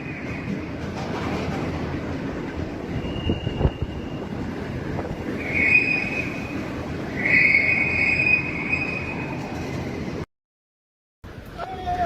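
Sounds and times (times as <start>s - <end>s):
train wheels squealing on rails: 0.0s - 1.3s, 2.8s - 10.2s
rushing train rumble: 0.0s - 10.2s, 11.3s - 12.0s.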